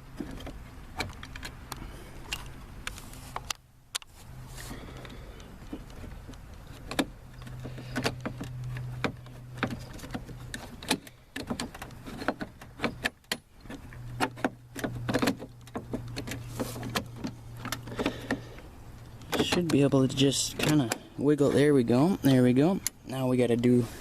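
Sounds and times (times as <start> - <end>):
steady low hum: 0.0 - 24.0
plastic door handle clicking and rattling: 5.7 - 18.5, 19.2 - 19.8.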